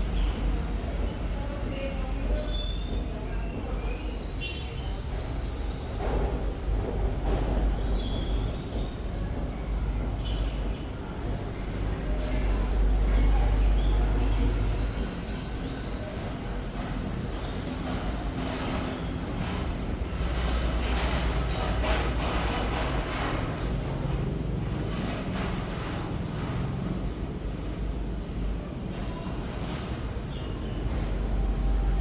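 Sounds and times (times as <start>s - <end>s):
steady low rumble: 0.0s - 1.7s
nightingale singing: 13.6s - 16.2s.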